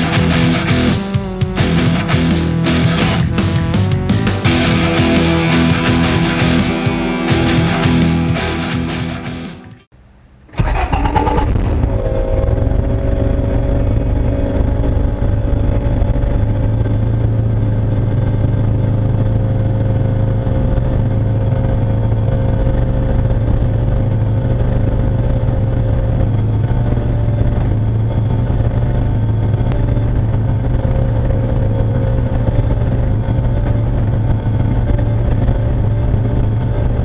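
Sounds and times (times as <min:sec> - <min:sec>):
car engine starting and idling: 0:00.0 - 0:37.0.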